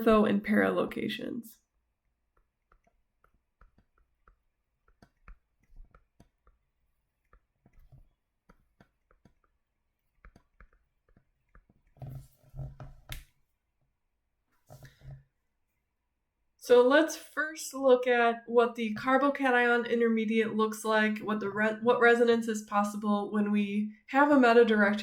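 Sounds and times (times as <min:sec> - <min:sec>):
light clicks and taps: 0:07.2 - 0:12.2.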